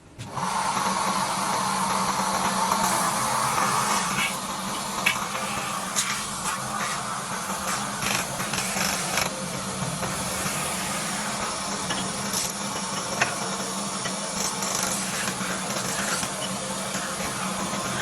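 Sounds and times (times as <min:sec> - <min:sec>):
workshop machinery humming: 0:00.0 - 0:18.0.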